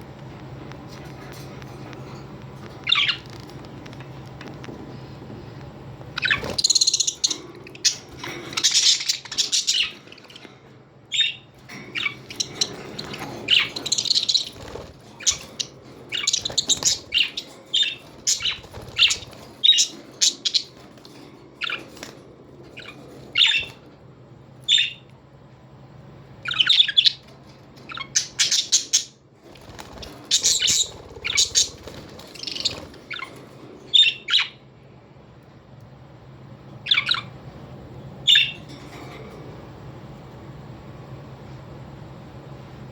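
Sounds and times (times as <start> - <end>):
parrots squawking: 6.2 - 23.9, 26.4 - 29.2, 29.8 - 34.6, 36.8 - 37.4, 38.2 - 39.1.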